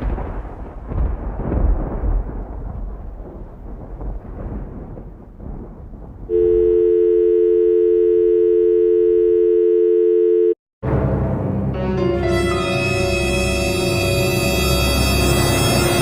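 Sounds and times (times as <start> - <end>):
telephone dial tone: 6.4 - 10.6
music: 10.8 - 16.0.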